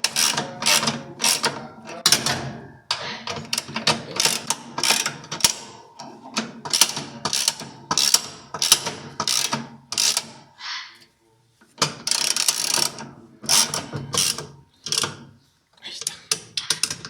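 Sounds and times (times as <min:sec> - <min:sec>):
ratchet wrench rasping and clicking: 0:06.7 - 0:10.3, 0:11.8 - 0:15.2.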